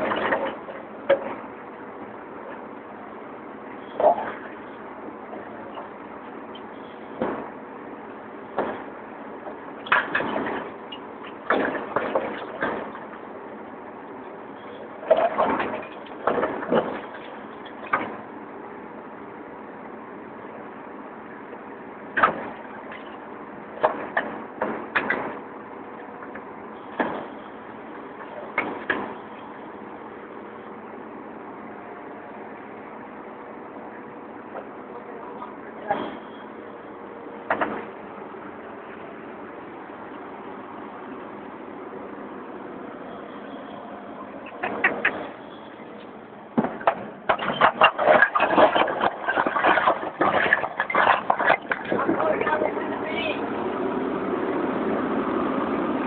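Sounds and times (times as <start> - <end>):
excavator diesel engine running: 0.0 - 56.0
concrete blocks knocking and banging: 46.6 - 52.7.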